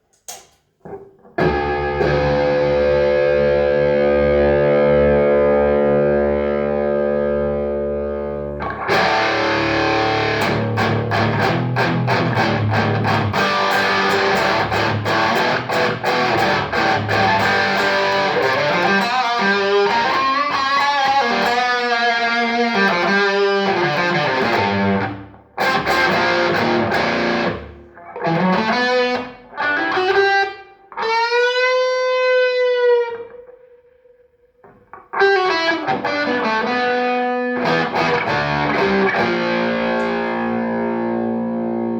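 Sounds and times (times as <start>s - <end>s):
overdriven electric guitar: 0.8s - 41.9s.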